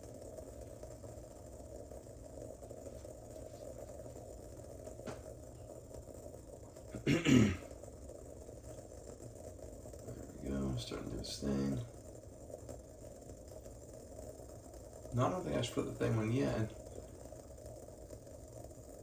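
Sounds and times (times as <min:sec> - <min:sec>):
faint low hum: 0:00.0 - 0:19.0
person coughing: 0:07.0 - 0:07.7.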